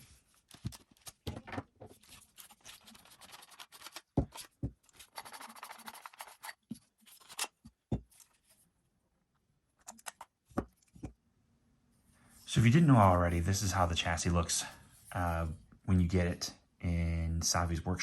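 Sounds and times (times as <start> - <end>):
parts scraping: 1.7 - 8.5.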